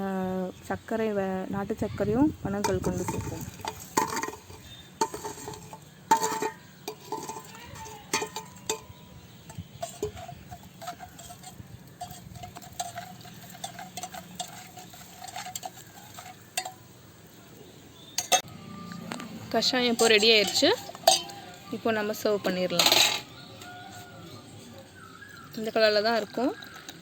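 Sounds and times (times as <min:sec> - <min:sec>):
spoon stirring and clinking: 0:02.6 - 0:17.0, 0:18.1 - 0:18.5, 0:19.6 - 0:23.9.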